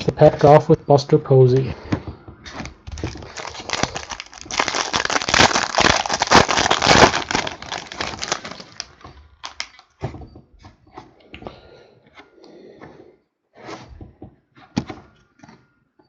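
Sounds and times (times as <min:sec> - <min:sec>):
foil wrapper crinkling and tearing: 0:02.6 - 0:09.9.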